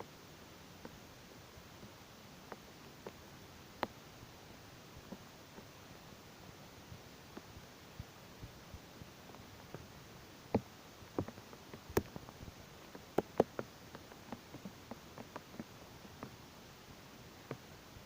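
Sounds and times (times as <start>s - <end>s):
faint steady hiss: 0.0s - 18.0s
raindrops tapping on a surface: 1.8s - 3.2s, 10.5s - 16.4s.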